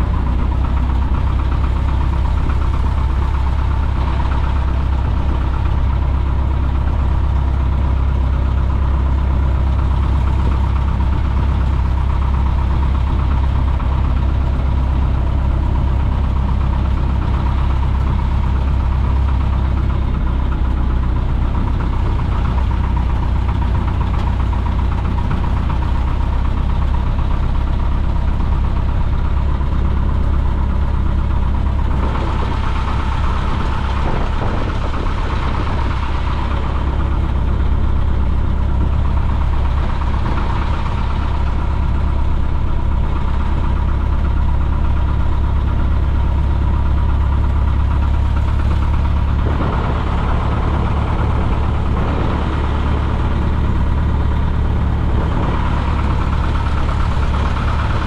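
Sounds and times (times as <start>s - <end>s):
propeller plane engine droning: 0.0s - 58.0s.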